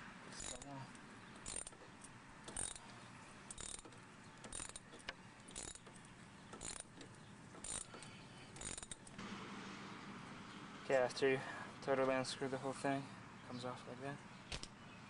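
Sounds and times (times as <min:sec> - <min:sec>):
wrench ratcheting clicks: 0:00.4 - 0:00.7, 0:01.4 - 0:02.9, 0:03.5 - 0:09.1.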